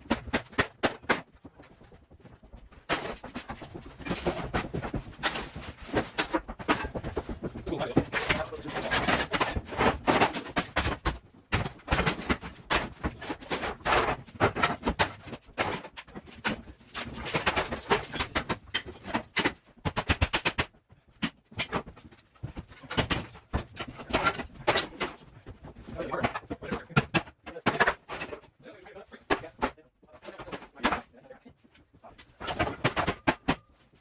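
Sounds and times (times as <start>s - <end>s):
knocking and clattering of materials: 0.0s - 34.0s.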